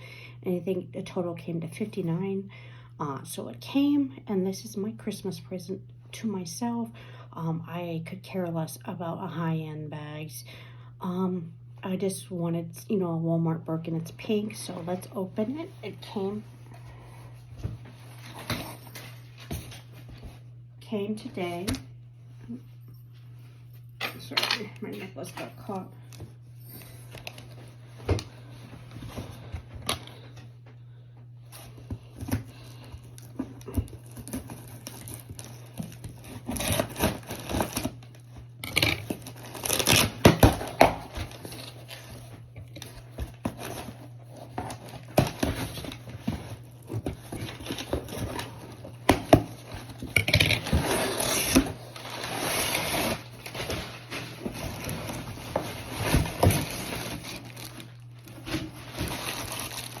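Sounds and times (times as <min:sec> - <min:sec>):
packaging crinkling and tearing: 0:32.5 - 1:00.0.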